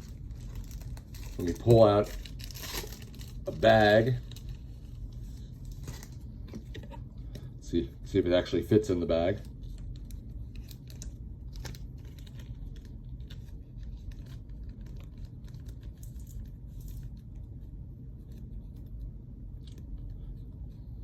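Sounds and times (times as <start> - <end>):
plastic bag crinkling: 0.0 - 6.2, 9.4 - 17.2
low steady hum: 0.0 - 21.0.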